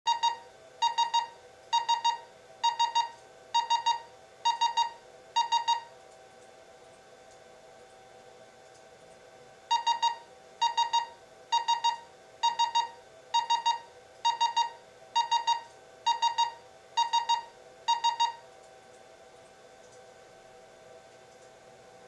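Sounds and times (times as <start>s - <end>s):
alarm clock beeping: 0.1s - 5.9s, 9.7s - 18.4s.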